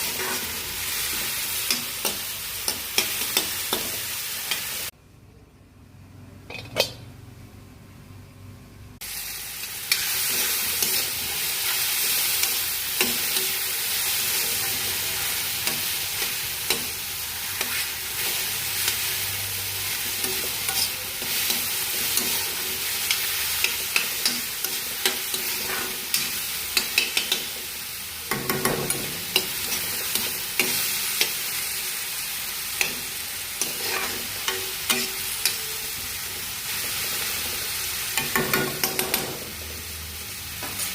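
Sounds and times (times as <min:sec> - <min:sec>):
spatula scraping a pan: 0:00.0 - 0:02.2, 0:14.3 - 0:19.0, 0:19.8 - 0:27.5, 0:32.8 - 0:35.8
food sizzling in a pan: 0:00.0 - 0:04.9, 0:09.0 - 0:40.9.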